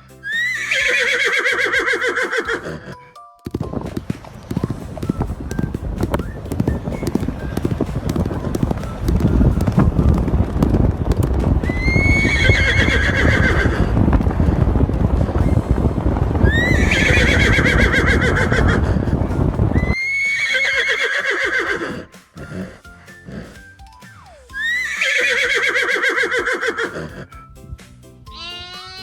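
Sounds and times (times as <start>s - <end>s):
horse whinnying: 0.2s - 3.1s, 11.6s - 14.0s, 16.4s - 19.0s, 19.8s - 22.6s, 24.5s - 27.3s, 28.3s - 29.0s
clatter of hoofbeats: 0.4s - 28.5s.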